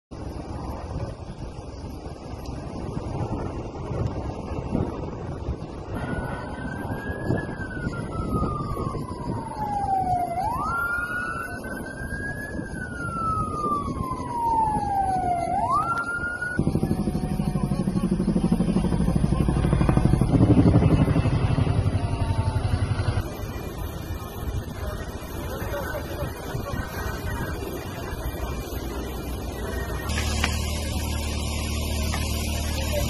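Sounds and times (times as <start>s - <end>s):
siren wailing: 5.8s - 33.0s
loud fast low throbbing: 16.6s - 25.3s.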